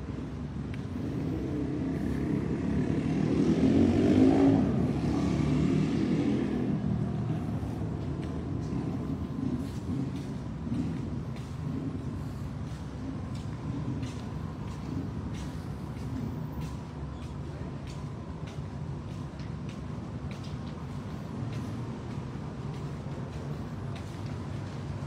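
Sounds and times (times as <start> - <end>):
background traffic noise: 0.0 - 25.0
vehicle passing: 0.8 - 16.7.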